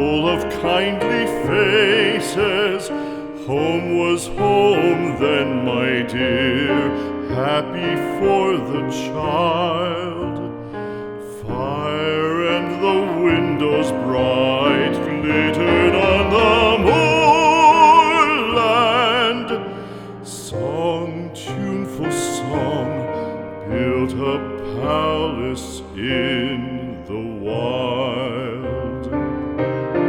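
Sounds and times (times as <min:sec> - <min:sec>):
slow tender song: 0:00.0 - 0:30.0
voice singing with vibrato: 0:12.6 - 0:19.7.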